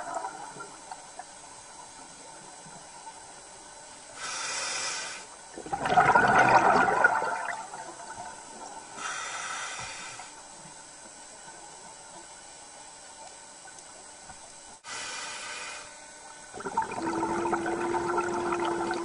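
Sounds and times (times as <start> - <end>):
regulator hissing inhale: 4.1 - 5.4, 8.9 - 10.4, 14.8 - 16.0
exhaled bubbles rushing: 5.6 - 8.6, 16.6 - 19.0.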